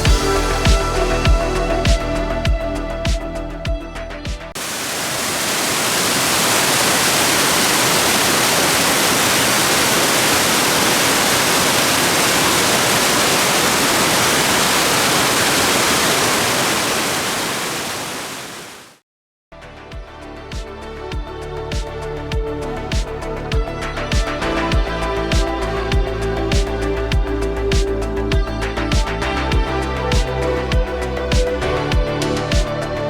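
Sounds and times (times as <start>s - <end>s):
rushing water: 4.6s - 19.0s.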